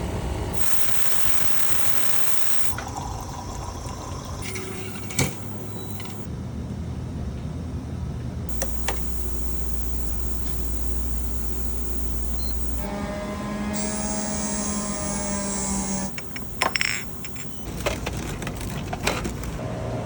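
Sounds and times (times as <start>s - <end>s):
laboratory machine humming: 0.0s - 6.3s, 8.5s - 20.0s
sharp clicks: 8.5s - 12.9s, 13.8s - 19.6s.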